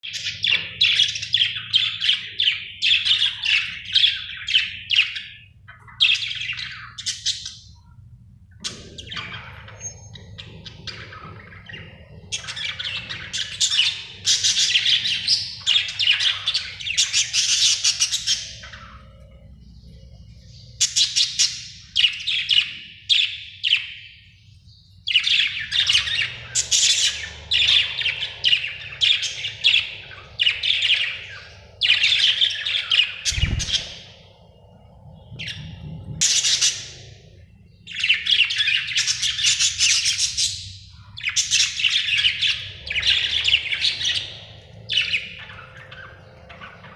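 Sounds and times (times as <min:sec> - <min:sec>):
budgerigar chirping and warbling: 0:08.6 - 0:19.4, 0:25.1 - 0:34.4, 0:35.2 - 0:46.9.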